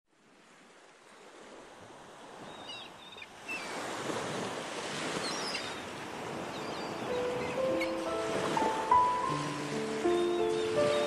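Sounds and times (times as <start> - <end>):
sea waves washing onto beach: 0.1 - 11.0
high bird chirps: 6.6 - 8.1, 10.1 - 11.0.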